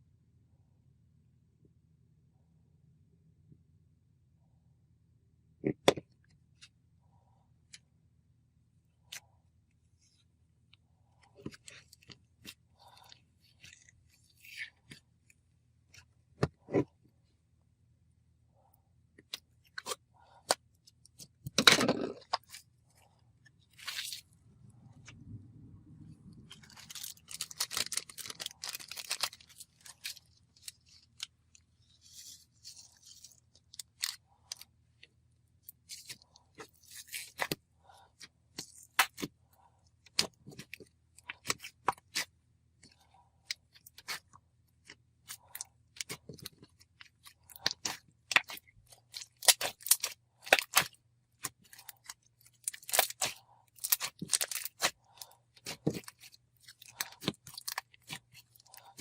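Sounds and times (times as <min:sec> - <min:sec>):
slime squished by hand: 0:43.5 - 0:59.0.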